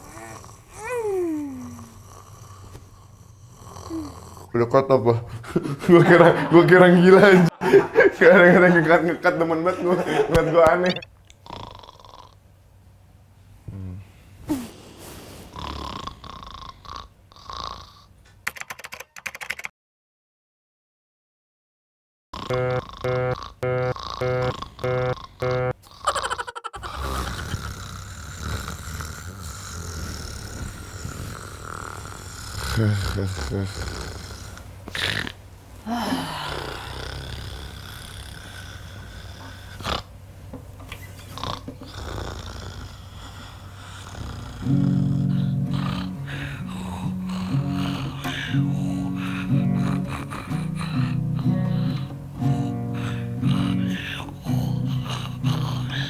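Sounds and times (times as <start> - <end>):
rasping snores: 0.0 - 4.6, 11.4 - 12.4, 13.7 - 18.1, 22.4 - 40.1, 41.0 - 56.0.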